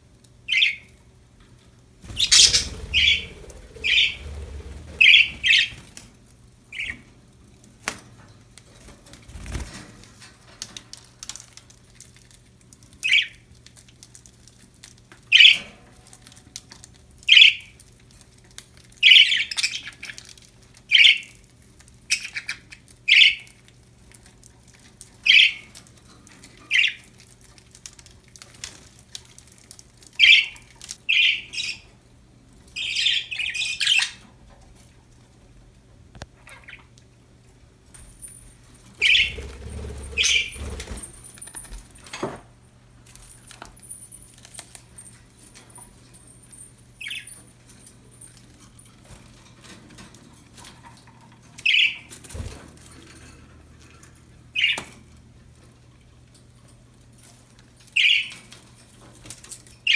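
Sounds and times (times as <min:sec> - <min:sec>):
budgies chirping and squawking: 0:02.0 - 0:05.9, 0:39.0 - 0:40.6.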